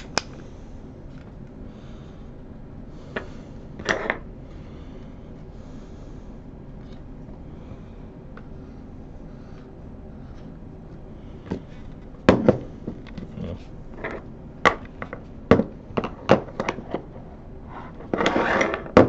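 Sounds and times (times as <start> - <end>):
scraping rustle: 17.8 - 19.0.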